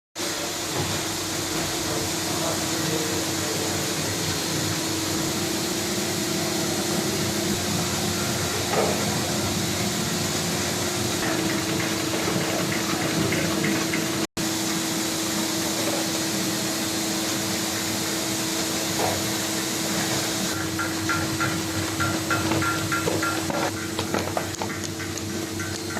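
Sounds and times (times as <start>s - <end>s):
tablet press machine running: 19.9s - 25.9s.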